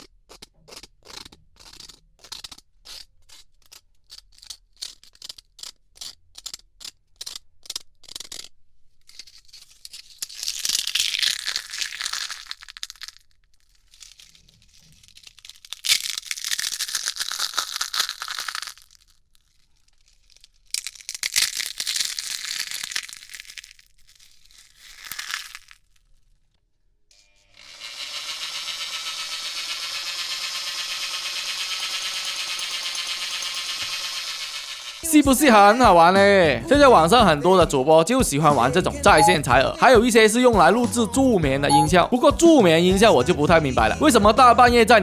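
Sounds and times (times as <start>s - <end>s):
crackly scratching and rubbing: 0.0s - 26.6s.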